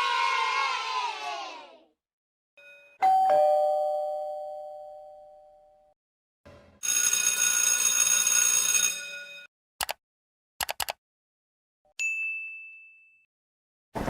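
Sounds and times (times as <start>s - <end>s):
ding-dong doorbell chime: 2.6s - 6.0s, 12.0s - 13.3s.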